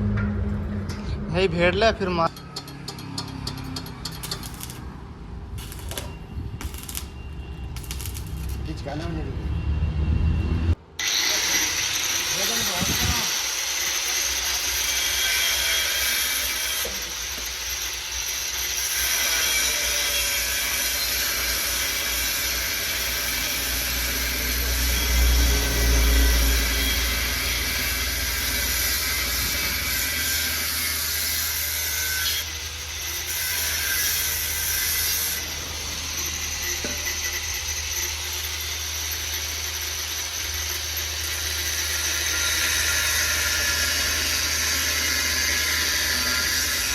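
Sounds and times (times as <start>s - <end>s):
power tool rasping on metal: 11.0s - 46.9s.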